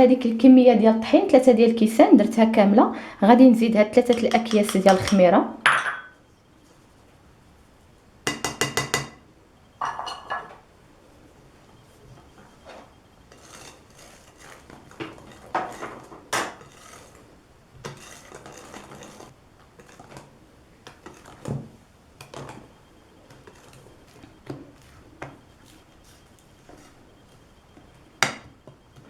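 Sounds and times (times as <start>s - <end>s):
utensils clinking in mixing bowl: 3.9s - 6.2s, 9.8s - 10.6s, 12.6s - 20.3s.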